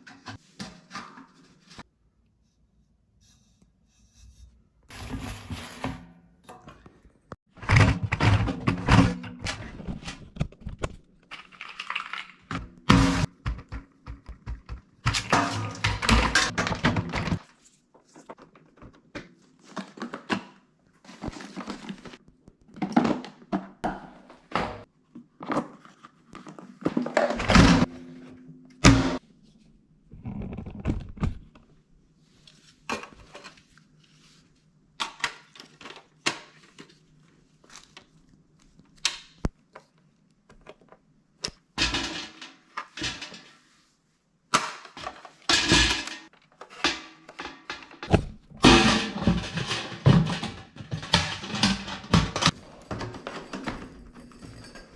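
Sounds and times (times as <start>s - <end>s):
plastic parts clattering: 7.6s - 12.8s, 44.5s - 54.9s.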